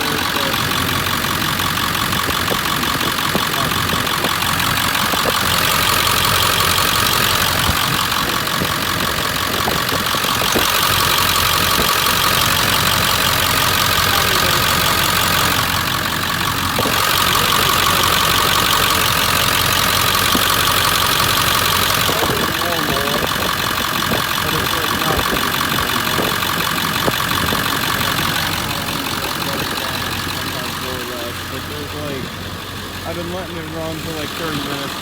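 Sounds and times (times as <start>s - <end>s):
diesel engine idling: 0.0s - 35.0s.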